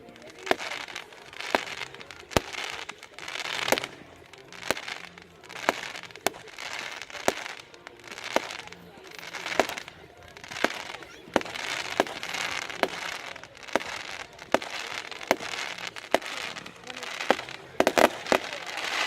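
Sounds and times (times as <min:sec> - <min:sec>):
fireworks bangs: 0:00.0 - 0:19.0
fireworks hissing and crackling: 0:00.0 - 0:19.0.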